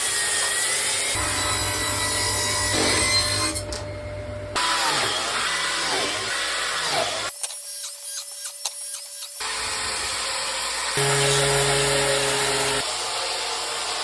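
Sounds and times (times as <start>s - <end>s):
power sander on wood: 9.4s - 14.0s.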